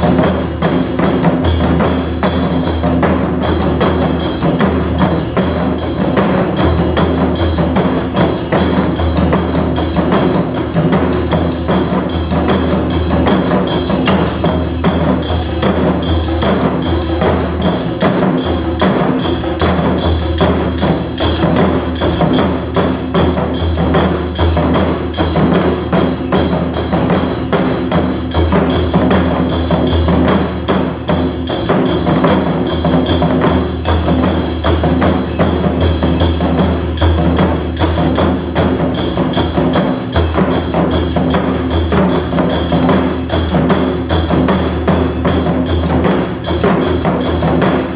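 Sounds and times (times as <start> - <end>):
taiko drums playing fast rhythm: 0.0 - 47.9.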